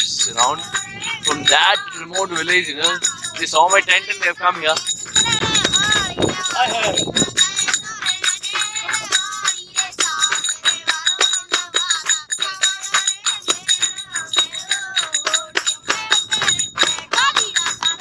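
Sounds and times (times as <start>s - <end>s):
jingling hand percussion: 0.0s - 18.0s
high voice singing: 5.2s - 9.1s.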